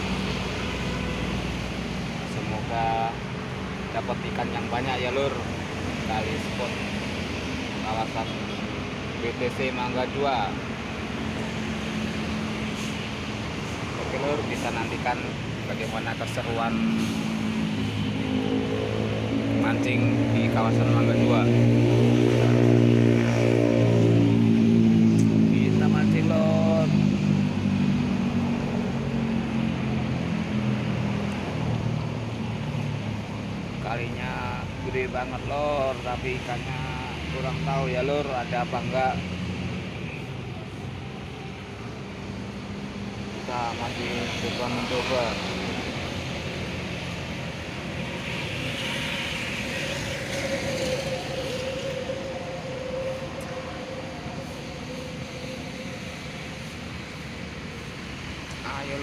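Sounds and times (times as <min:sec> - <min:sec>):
traffic hiss: 0:00.0 - 0:59.0
vehicle passing with mechanical rumble: 0:00.0 - 0:59.0
engine running low pitch: 0:10.4 - 0:34.8, 0:38.1 - 0:59.0.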